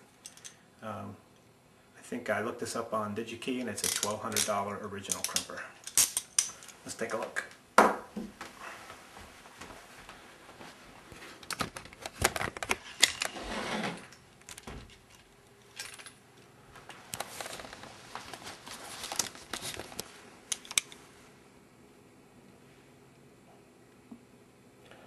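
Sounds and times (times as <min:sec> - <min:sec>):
hand crimper clicking and clattering: 0:00.2 - 0:00.6, 0:03.8 - 0:06.7, 0:20.5 - 0:21.0.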